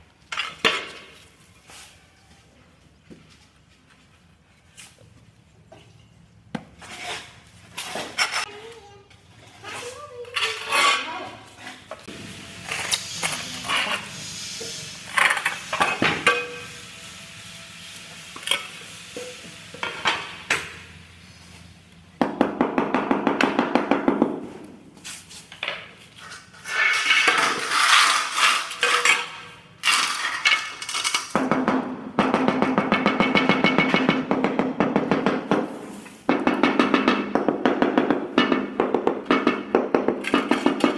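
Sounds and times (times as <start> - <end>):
tiles and metal tools clinking: 26.2 - 31.4.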